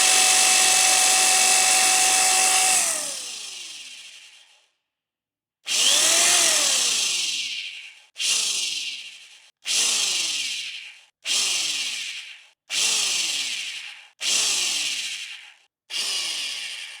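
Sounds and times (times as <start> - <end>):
power drill bursts: 0.0 - 3.5, 5.7 - 7.0.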